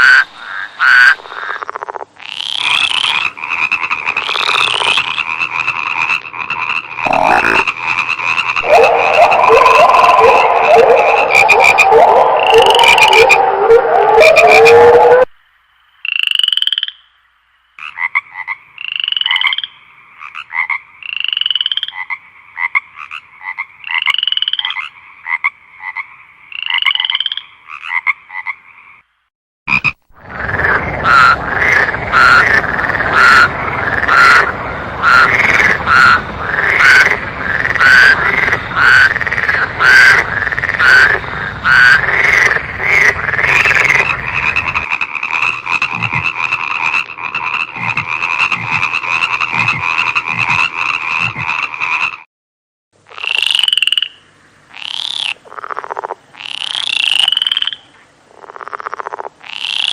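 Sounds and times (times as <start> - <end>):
frogs croaking: 0.0 - 52.3, 53.0 - 59.9.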